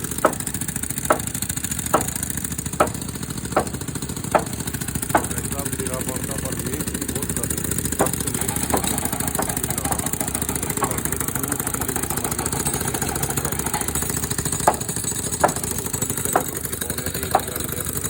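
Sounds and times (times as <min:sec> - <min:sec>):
sharp knocks or clanks: 0:00.0 - 0:06.1, 0:07.4 - 0:17.8
small engine running: 0:00.0 - 0:18.0.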